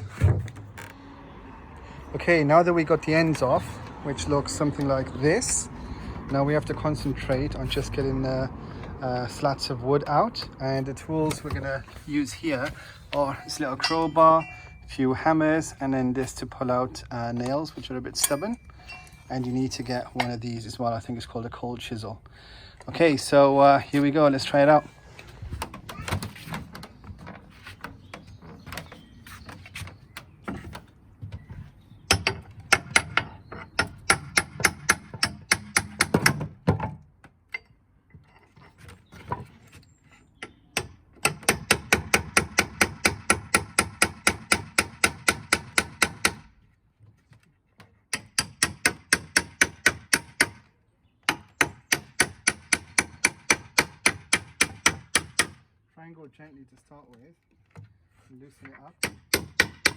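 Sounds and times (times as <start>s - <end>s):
hammer striking chisel: 32.1s - 36.5s, 48.1s - 50.6s, 51.3s - 55.6s, 59.0s - 59.9s.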